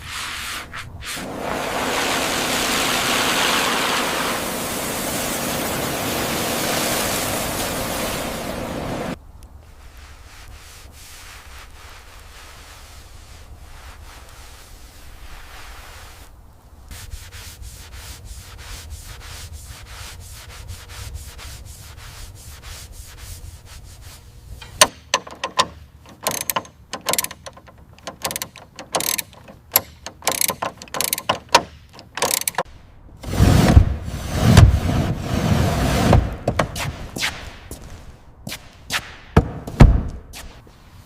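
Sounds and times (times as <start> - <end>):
sanding strokes: 16.9 - 24.3
ratchet clicks: 24.6 - 32.7.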